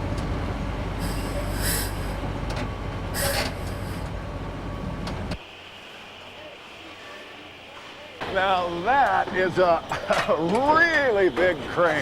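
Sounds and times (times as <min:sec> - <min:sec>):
diesel engine running: 0:00.0 - 0:11.9
short hissing bursts: 0:01.0 - 0:02.2, 0:03.2 - 0:04.1.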